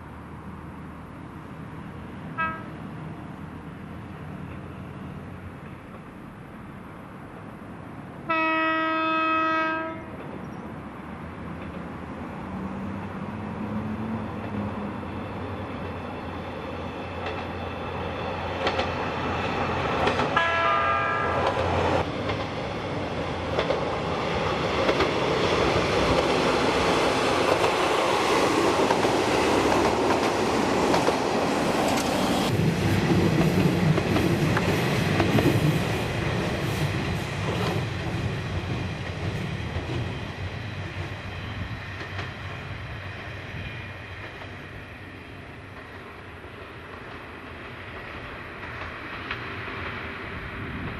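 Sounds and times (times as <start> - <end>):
diesel railcar passing: 0.0 - 50.9
train horn: 2.4 - 2.8, 8.2 - 10.1, 20.4 - 21.5
wheels clacking over rails: 14.3 - 20.4, 21.4 - 41.2.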